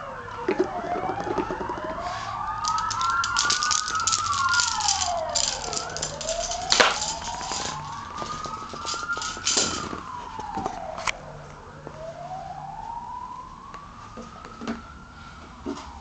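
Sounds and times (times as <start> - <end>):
siren wailing: 0.0 - 16.0
clicking and rattling: 2.6 - 10.5.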